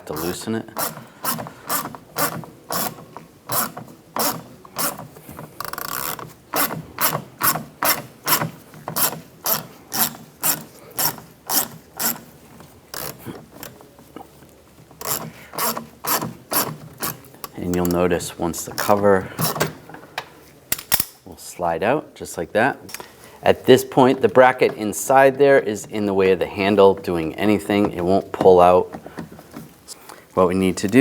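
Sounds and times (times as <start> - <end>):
hand ratchet clicking: 0.0 - 12.3, 12.9 - 13.8, 15.0 - 18.1, 18.7 - 19.7.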